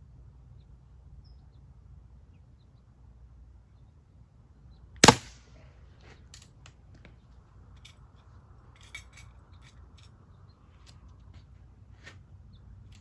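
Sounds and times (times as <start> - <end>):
pistol metallic clicks: 5.0 - 5.3.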